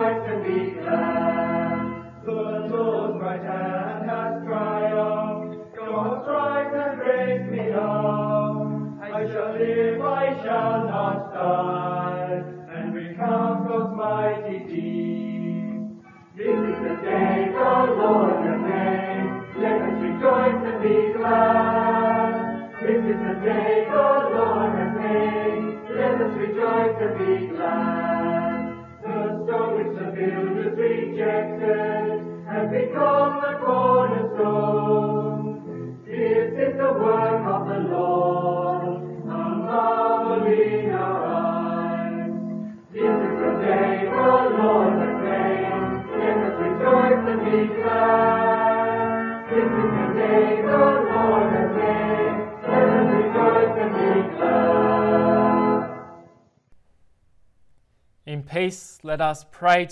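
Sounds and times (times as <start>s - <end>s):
choir singing: 0.0s - 56.1s
organ accompaniment: 0.0s - 56.6s.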